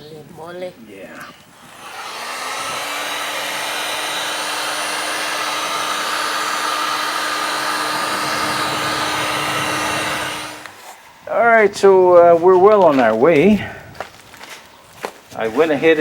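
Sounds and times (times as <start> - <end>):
electric motor tool spinning: 1.5 - 11.1.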